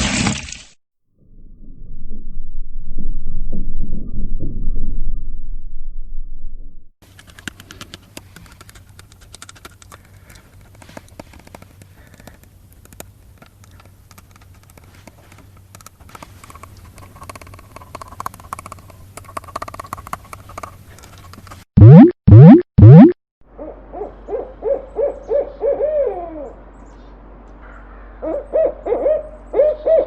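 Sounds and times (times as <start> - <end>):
small clicks and taps: 7.1 - 21.6
loud sound: 21.8 - 23.2.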